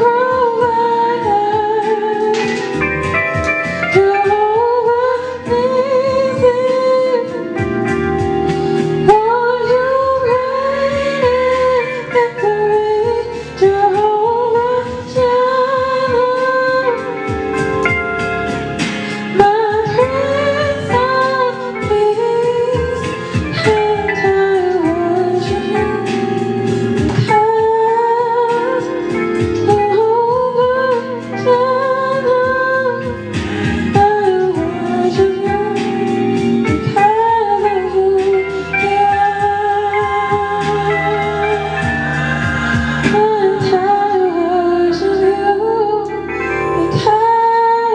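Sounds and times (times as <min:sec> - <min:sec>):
instrumental accompaniment: 0:00.0 - 0:47.9
person singing long notes: 0:36.7 - 0:47.9.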